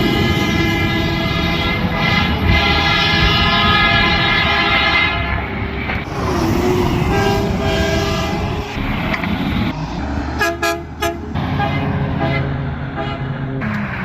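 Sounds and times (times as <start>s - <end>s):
truck engine running: 0.0s - 4.6s
truck horn blasts: 0.0s - 5.6s, 6.6s - 8.9s, 10.4s - 13.4s.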